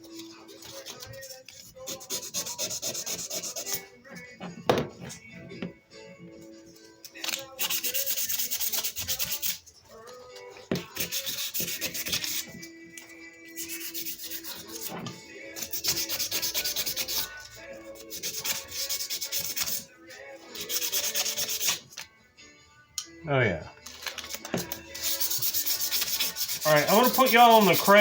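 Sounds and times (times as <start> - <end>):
sandpaper scratching on metal: 0.0 - 3.9, 7.6 - 9.6, 10.9 - 12.6, 13.5 - 21.9, 24.6 - 28.0.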